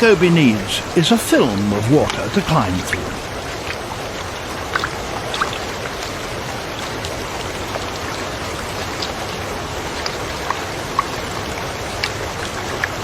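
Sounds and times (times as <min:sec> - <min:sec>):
water drops plinking: 0:00.0 - 0:03.4
waterfall rushing: 0:00.0 - 0:13.0.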